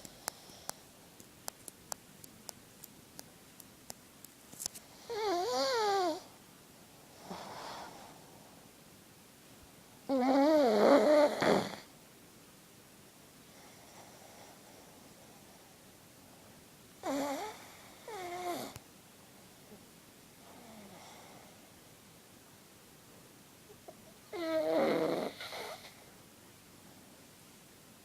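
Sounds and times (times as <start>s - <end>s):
faint regular clicks: 0.0s - 4.9s
dog snoring: 5.0s - 6.3s, 10.1s - 11.9s, 17.0s - 18.8s, 20.5s - 21.5s, 24.3s - 26.1s
faint breath: 7.1s - 8.7s.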